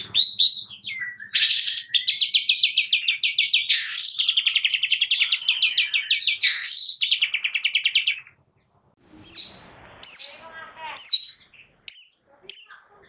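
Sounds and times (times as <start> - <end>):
harsh rasping bird call: 0.0 - 8.2
bird singing fast trills: 0.0 - 8.4, 9.2 - 10.4, 11.0 - 12.9.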